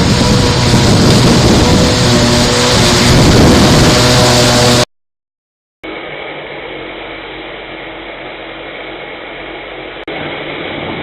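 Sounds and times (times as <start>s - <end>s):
machine running: 0.0s - 4.9s.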